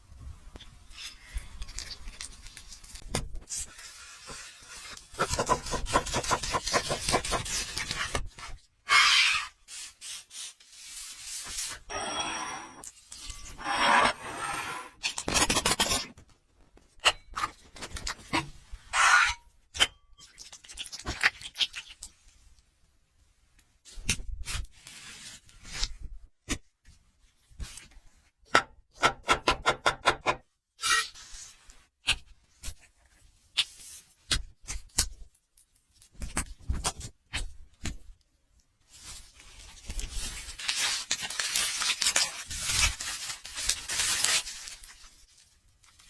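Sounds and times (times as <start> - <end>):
food scraping and rubbing: 3.6 - 8.2, 10.8 - 16.1.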